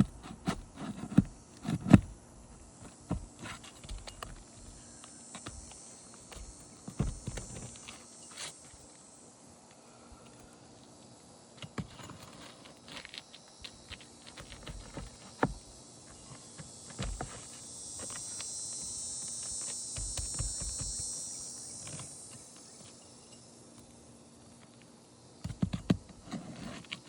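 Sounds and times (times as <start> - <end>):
hand tools on roof shingles: 0.0 - 2.2, 2.8 - 4.8, 6.3 - 8.5, 13.8 - 18.4, 19.2 - 21.1, 25.4 - 27.0
steady hiss: 2.2 - 25.4.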